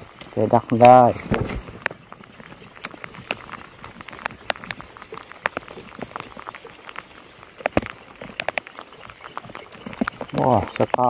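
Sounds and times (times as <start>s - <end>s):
heavy rain falling: 0.0s - 11.0s
raindrops hitting close: 0.0s - 11.0s.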